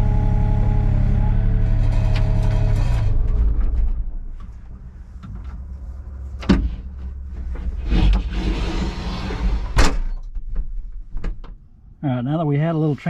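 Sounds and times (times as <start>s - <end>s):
vehicle engine cutting off: 0.0s - 5.8s
low rumble: 0.0s - 12.2s.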